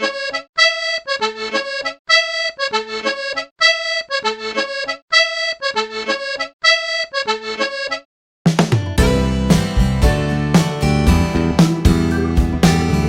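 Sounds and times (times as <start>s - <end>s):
bright bouncy background music: 8.5s - 13.0s.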